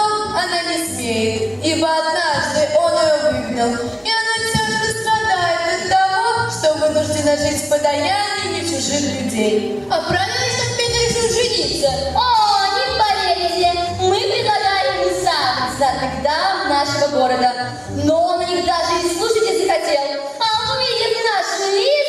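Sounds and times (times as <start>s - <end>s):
instrumental backing with bass: 0.0s - 19.8s.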